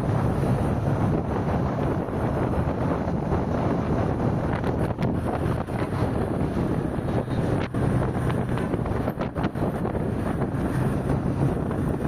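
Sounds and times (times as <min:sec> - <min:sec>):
car road noise: 0:00.0 - 0:12.0
wind buffeting microphone: 0:00.0 - 0:12.0.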